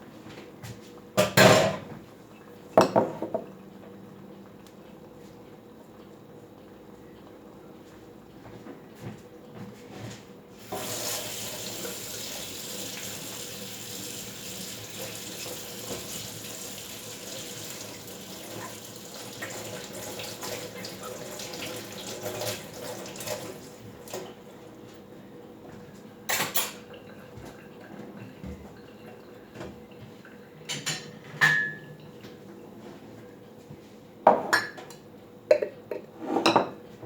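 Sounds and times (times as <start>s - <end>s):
tap water running into sink: 10.6s - 24.3s.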